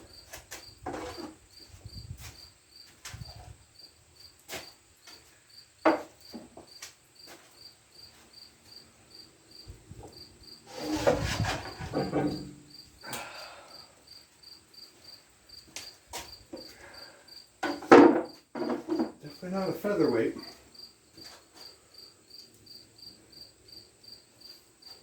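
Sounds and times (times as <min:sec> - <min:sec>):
cricket chirping: 0:00.0 - 0:10.9, 0:11.6 - 0:25.0
knocking and scraping metal parts: 0:00.3 - 0:01.4, 0:10.7 - 0:12.7, 0:17.6 - 0:19.3.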